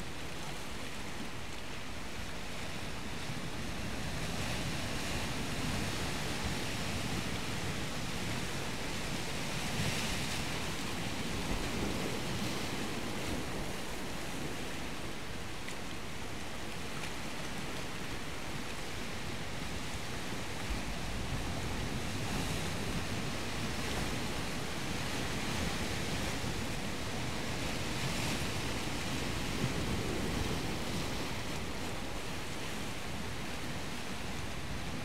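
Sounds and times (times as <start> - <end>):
sea surf washing: 0.0 - 35.0
wind on microphone: 17.6 - 35.0.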